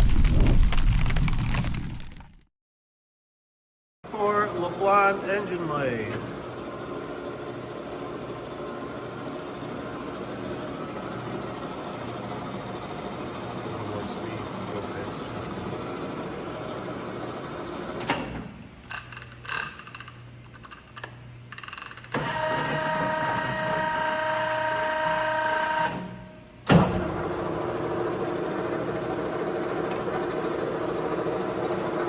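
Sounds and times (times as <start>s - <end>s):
lathe gear whine: 4.1s - 18.1s, 22.0s - 26.0s, 27.0s - 32.0s.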